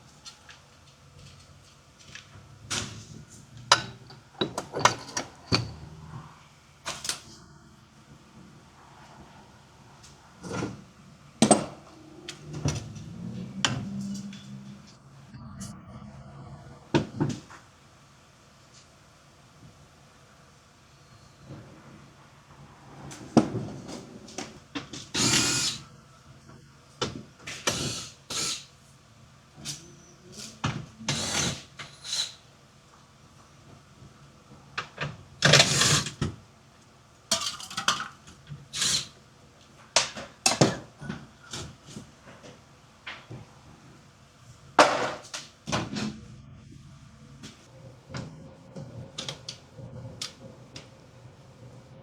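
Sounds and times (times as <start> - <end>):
power tool bursts: 25.1 - 25.8, 27.7 - 28.7, 35.5 - 36.2.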